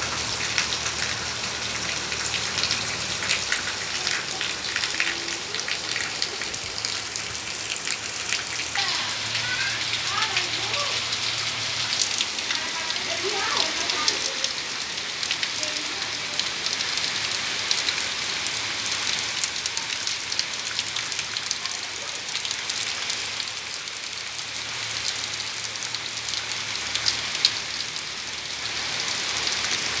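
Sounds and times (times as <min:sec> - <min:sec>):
heavy rain falling: 0:00.0 - 0:30.0.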